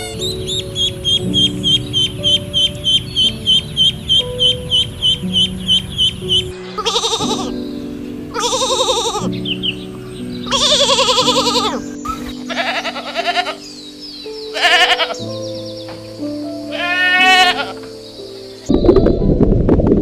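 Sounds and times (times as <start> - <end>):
music with long held notes: 0.0 - 20.0
sheep bleating: 6.8 - 7.6, 8.3 - 9.3, 10.5 - 11.8, 12.5 - 13.6, 14.5 - 15.2, 16.7 - 17.8.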